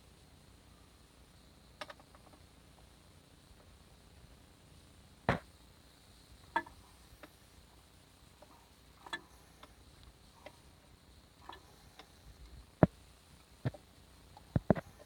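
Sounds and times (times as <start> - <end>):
scattered clicks and knocks: 1.8 - 2.4, 14.4 - 15.0.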